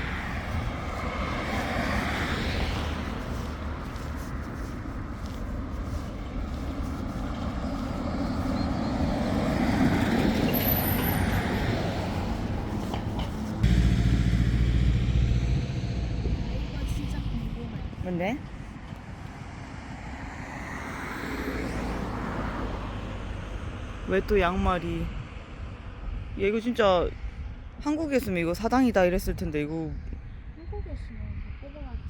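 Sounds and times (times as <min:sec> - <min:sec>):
road traffic passing: 0:00.0 - 0:26.3
low rumble: 0:13.4 - 0:20.5.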